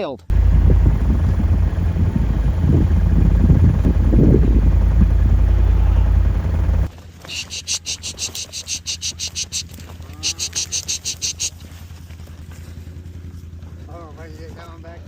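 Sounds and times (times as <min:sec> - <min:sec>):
insects chirping: 0:00.3 - 0:06.9
wind buffeting microphone: 0:00.3 - 0:06.9.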